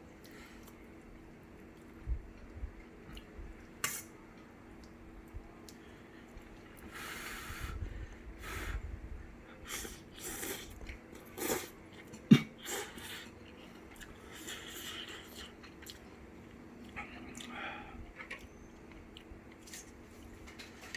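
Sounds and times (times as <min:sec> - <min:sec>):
person slurping noodles: 0:09.7 - 0:10.8, 0:11.4 - 0:11.8, 0:12.6 - 0:13.3.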